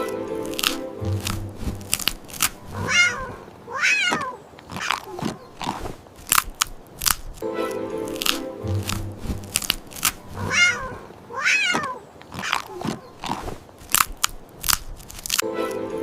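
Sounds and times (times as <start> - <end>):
cat crunching a treat: 0.0 - 3.3, 4.5 - 7.4, 8.1 - 10.9, 11.7 - 15.4
cat meowing: 2.7 - 5.2, 10.4 - 12.9.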